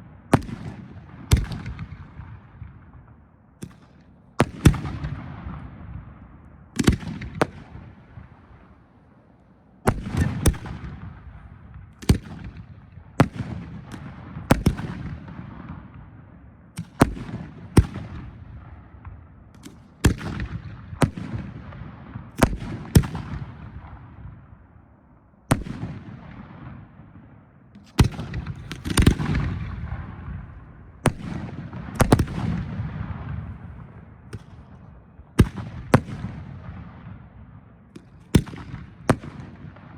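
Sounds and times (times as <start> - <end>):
fireworks bangs: 28.0 - 37.1.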